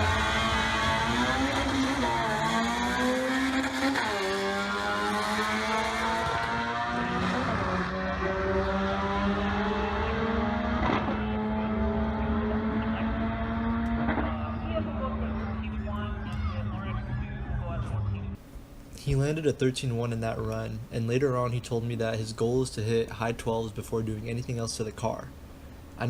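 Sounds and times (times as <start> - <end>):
race car engine at full throttle: 0.0 - 18.4.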